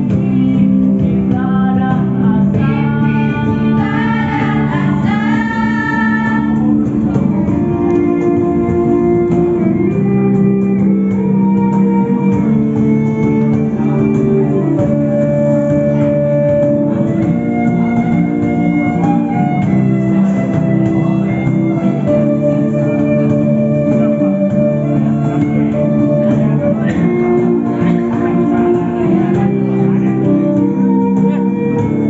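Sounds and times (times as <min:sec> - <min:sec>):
person singing: 0:00.0 - 0:07.9
instrumental music of held chords: 0:00.0 - 0:32.0.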